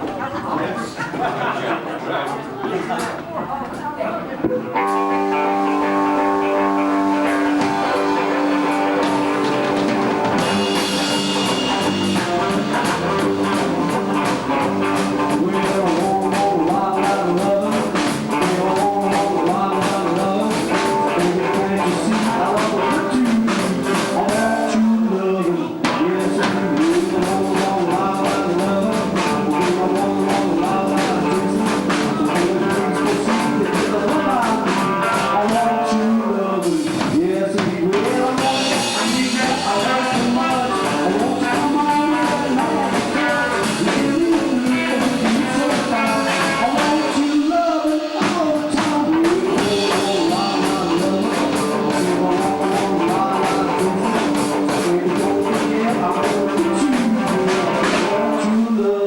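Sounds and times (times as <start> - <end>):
rock and roll band playing: 0.0 - 59.0
drum kit: 2.7 - 59.0
electric guitar with pitch bends: 4.3 - 24.9.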